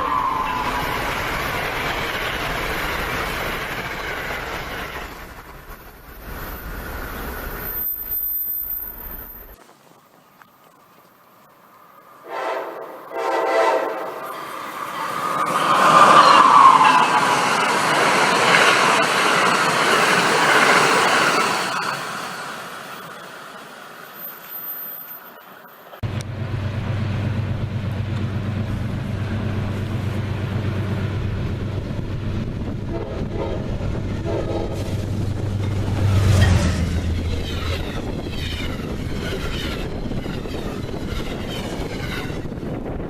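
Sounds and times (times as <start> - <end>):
train cars rushing and clattering: 0.0 - 9.6, 11.6 - 43.0
train horn blast: 12.2 - 14.3, 32.9 - 35.1.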